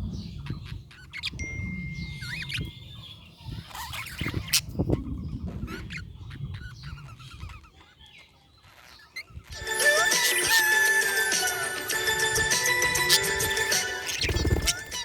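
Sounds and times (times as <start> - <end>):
budgies chirping: 0.0 - 15.0
music: 9.6 - 15.0.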